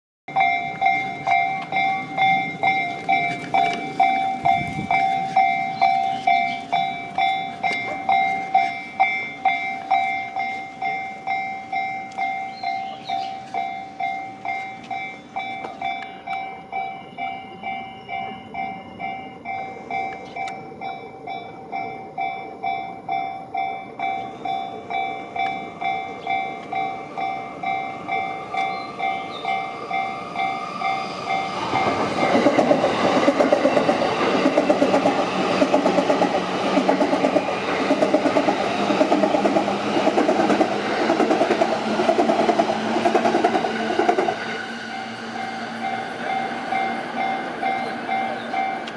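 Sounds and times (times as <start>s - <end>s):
level-crossing bell dinging: 0.3s - 36.8s, 40.9s - 48.9s
train passing: 0.3s - 48.9s.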